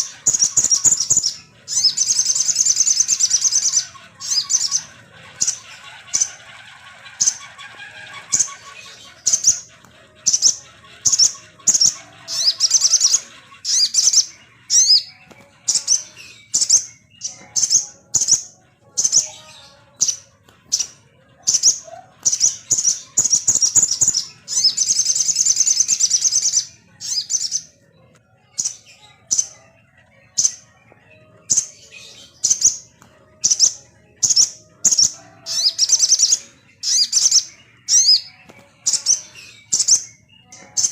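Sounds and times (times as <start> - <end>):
rapid bird trill: 0.0 - 27.8
songbird chirps: 0.0 - 40.9.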